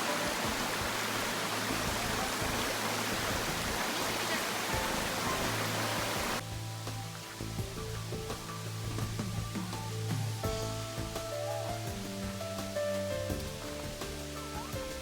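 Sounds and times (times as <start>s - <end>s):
waterfall rushing: 0.0s - 10.3s
background music: 0.0s - 15.0s.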